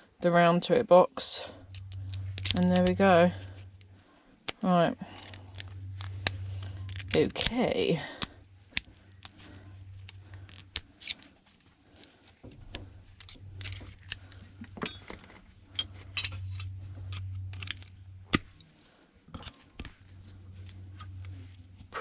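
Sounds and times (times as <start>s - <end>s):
low steady hum: 0.0s - 22.0s
hand tools clicking and scraping: 5.1s - 22.0s.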